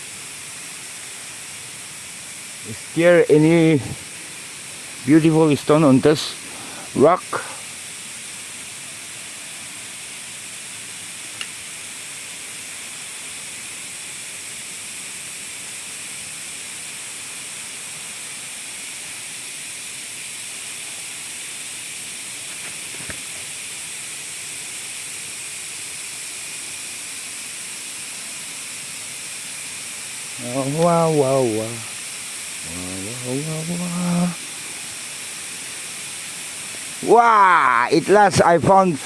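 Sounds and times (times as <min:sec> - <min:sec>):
rushing river and waterfall: 0:00.8 - 0:09.8, 0:34.3 - 0:39.0.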